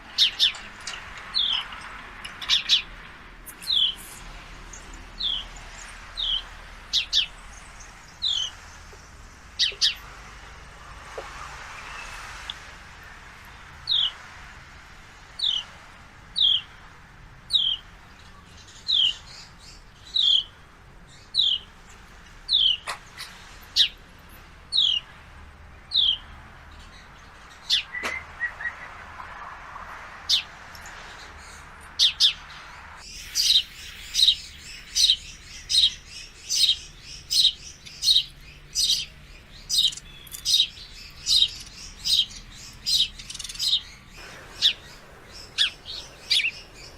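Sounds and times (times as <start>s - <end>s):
sparrow chirping: 0.1s - 10.3s, 11.6s - 14.4s, 15.3s - 16.8s, 17.5s - 29.4s, 30.2s - 46.9s.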